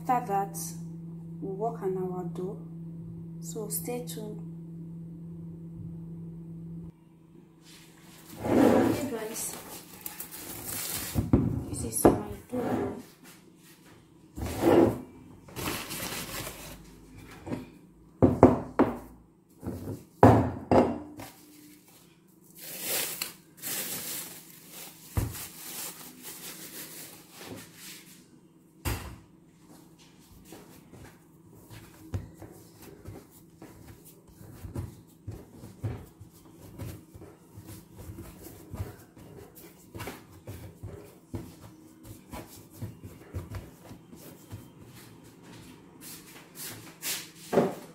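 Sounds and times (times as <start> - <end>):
rustling or scraping: 7.6 - 11.3, 12.5 - 17.6, 21.2 - 28.3.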